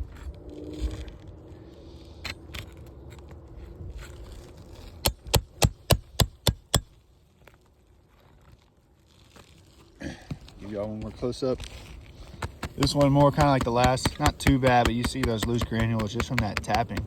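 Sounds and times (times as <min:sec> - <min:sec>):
shingle scraping: 0:04.1 - 0:06.9, 0:10.3 - 0:17.0
hammer striking nail puller: 0:12.6 - 0:17.0.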